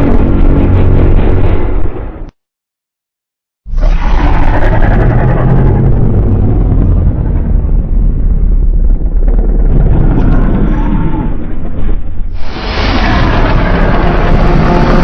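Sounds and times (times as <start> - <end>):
monster roar with low rumble: 3.7 - 12.0, 12.6 - 15.0.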